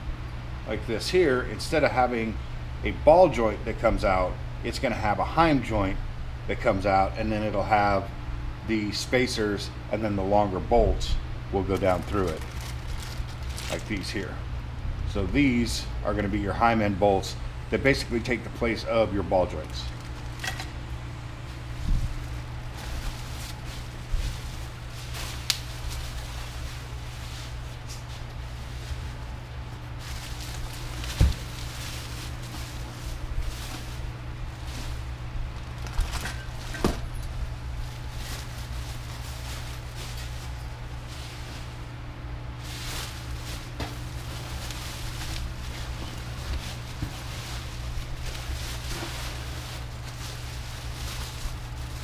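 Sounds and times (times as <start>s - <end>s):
steady low hum: 0.0s - 52.0s
rustling swishes: 21.5s - 35.2s.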